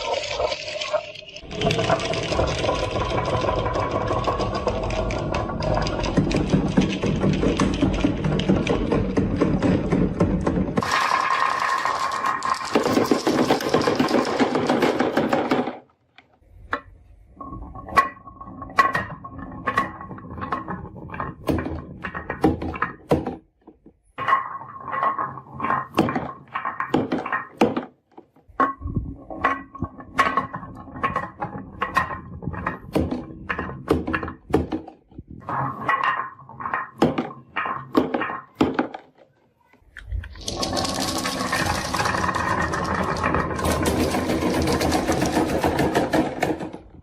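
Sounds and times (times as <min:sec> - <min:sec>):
marbles clacking down wooden run: 0:00.0 - 0:15.8, 0:40.0 - 0:47.0.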